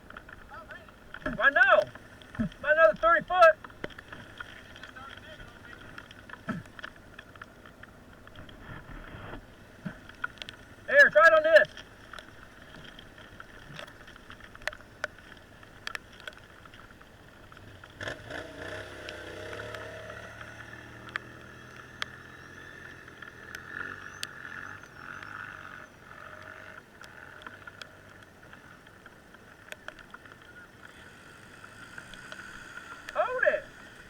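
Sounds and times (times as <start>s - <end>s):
faint small engine running: 17.5s - 28.8s
light clicks: 26.4s - 34.0s.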